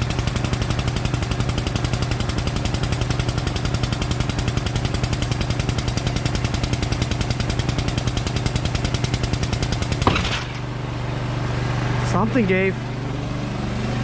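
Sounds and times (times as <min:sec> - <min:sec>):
hydraulic pump clattering: 0:05.8 - 0:10.8
sharp bang of clamp breaking: 0:10.0 - 0:10.7.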